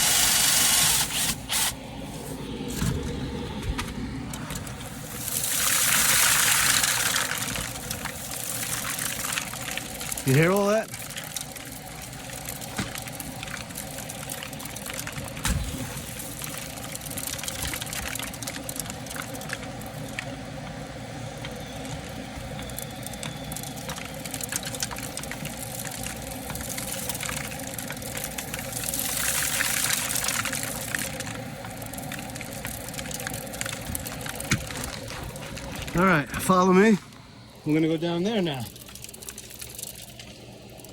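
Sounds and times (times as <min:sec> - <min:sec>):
vacuum running: 0:00.0 - 0:39.0
debris rattling through hose: 0:04.4 - 0:20.3, 0:21.6 - 0:37.0.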